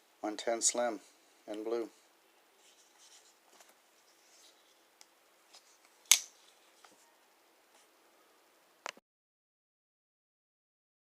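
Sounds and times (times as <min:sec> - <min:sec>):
folding knife click: 0:06.1 - 0:06.3.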